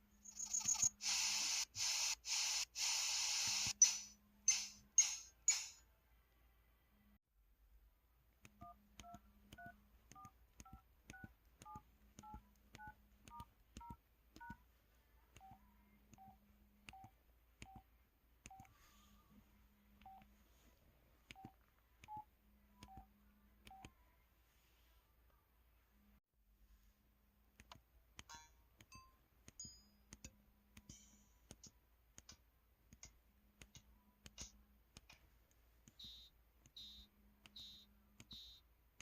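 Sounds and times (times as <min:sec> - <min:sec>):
phone key tone beeps: 0:36.0 - 0:38.6.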